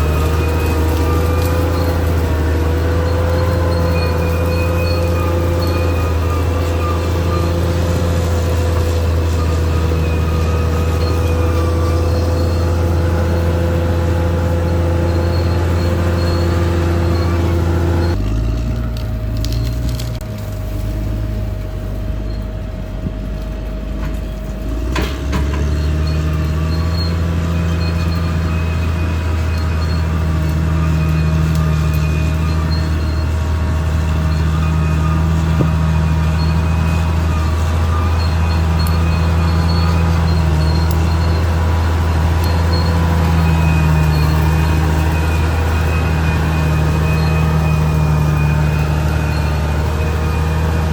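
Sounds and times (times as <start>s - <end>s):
bulldozer diesel engine running: 0.0s - 50.9s.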